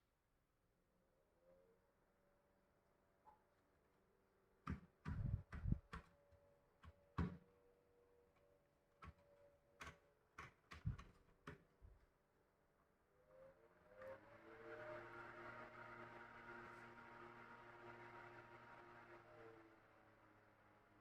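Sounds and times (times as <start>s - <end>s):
clicks and knocks of handled fan: 9.8s - 11.7s.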